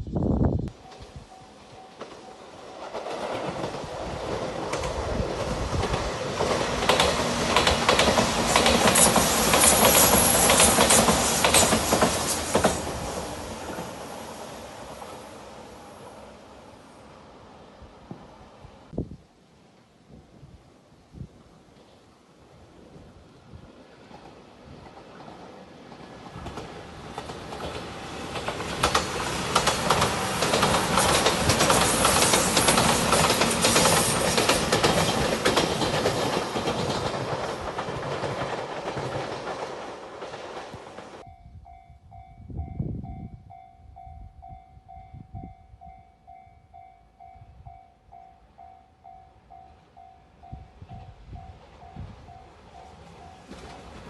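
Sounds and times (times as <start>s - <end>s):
train wheels on rails: 0.6s - 16.9s, 23.7s - 41.3s, 49.4s - 54.0s
clacks over rail joints: 2.0s - 12.9s, 24.1s - 41.2s.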